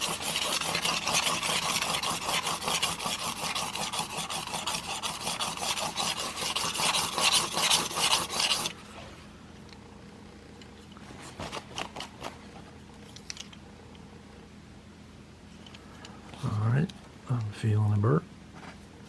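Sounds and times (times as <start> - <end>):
blade scraping on sharpening plate: 0.0 - 8.8.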